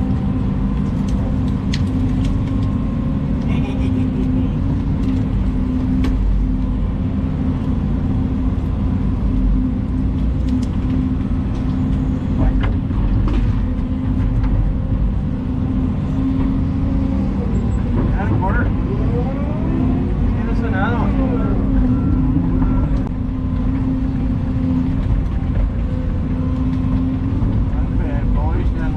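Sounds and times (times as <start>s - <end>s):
excavator diesel engine running: 0.0s - 28.9s.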